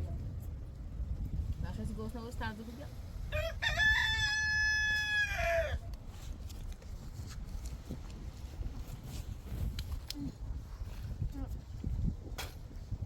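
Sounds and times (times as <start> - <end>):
rooster crowing: 3.3 - 5.8.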